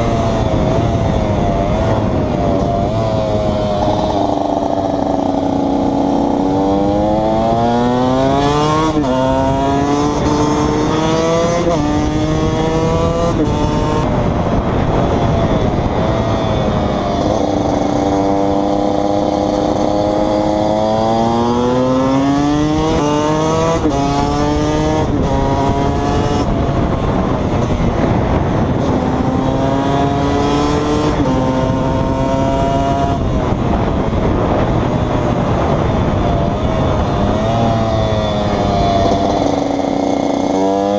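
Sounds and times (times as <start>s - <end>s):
two-stroke engine revving: 0.0s - 14.1s, 15.8s - 34.6s, 36.8s - 40.9s.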